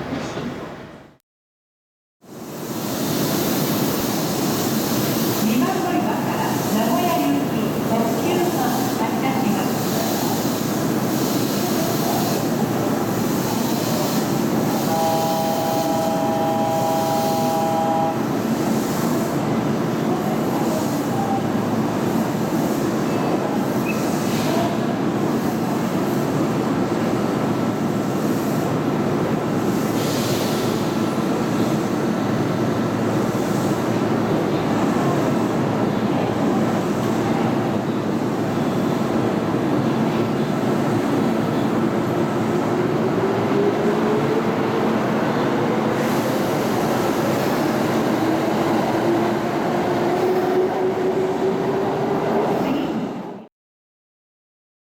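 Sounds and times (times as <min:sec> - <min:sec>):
train running on rails: 0:02.3 - 0:53.5
train horn: 0:14.8 - 0:18.3.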